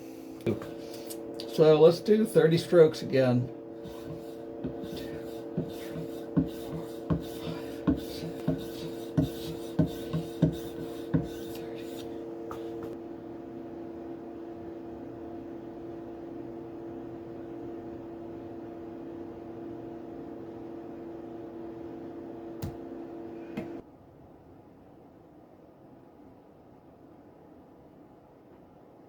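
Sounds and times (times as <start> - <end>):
steady low hum: 0.0 - 23.8
knife scraping on strop: 3.8 - 13.0.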